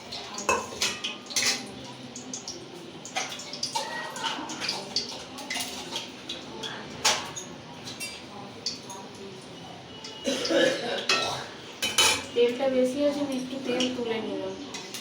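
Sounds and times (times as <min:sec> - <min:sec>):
hot oil sizzling: 0:00.0 - 0:15.0.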